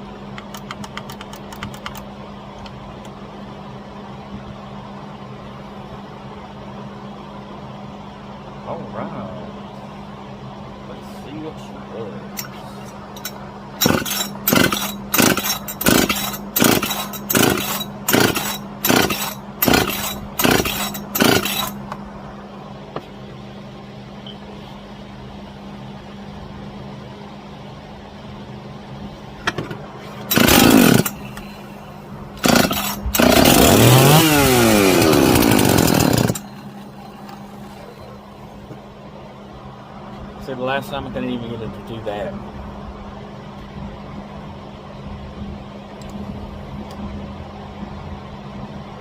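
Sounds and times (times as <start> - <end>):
chainsaw engine popping and running: 13.2 - 21.8, 30.2 - 31.5, 32.4 - 37.8
starter cord pulls: 29.5 - 31.4, 32.4 - 36.6.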